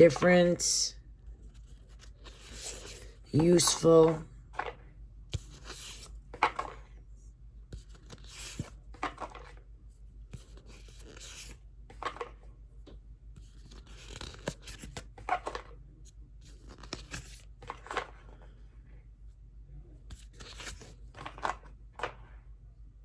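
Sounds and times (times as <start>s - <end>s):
low steady hum: 0.0s - 23.0s
cards being flipped: 1.5s - 6.8s, 7.7s - 9.6s, 10.3s - 12.4s, 13.4s - 15.7s, 16.5s - 18.2s, 20.1s - 22.2s.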